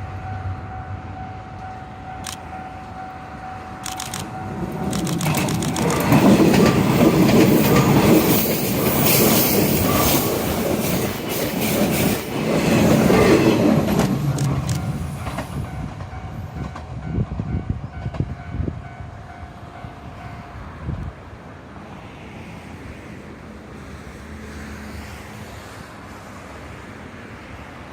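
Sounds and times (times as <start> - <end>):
train wheels clattering over rail joints: 3.8 - 18.3.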